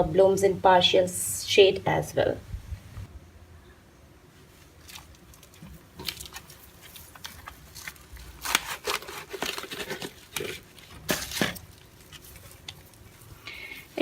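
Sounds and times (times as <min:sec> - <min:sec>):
rustling crinkling handling noise: 0:04.4 - 0:14.0.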